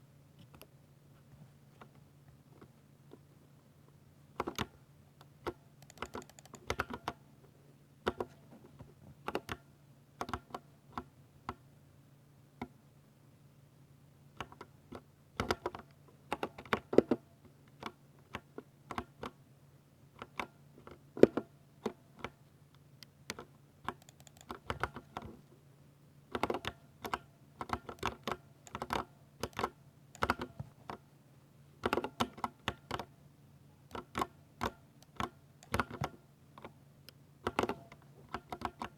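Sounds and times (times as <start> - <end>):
faint steady hum: 0.0 - 38.9
typing on mechanical keyboard: 5.5 - 7.1, 23.3 - 25.0, 26.4 - 30.6, 37.5 - 38.9.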